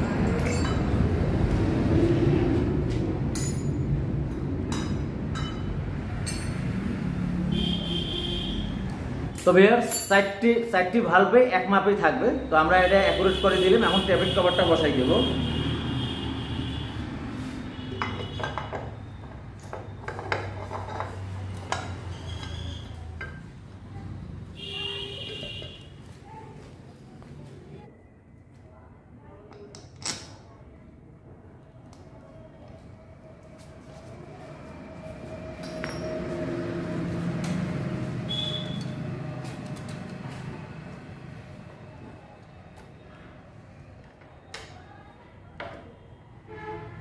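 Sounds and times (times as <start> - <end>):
metal tools clinking: 0.2 - 0.9, 4.7 - 6.7, 9.4 - 10.4
hand tools clinking: 9.4 - 10.4.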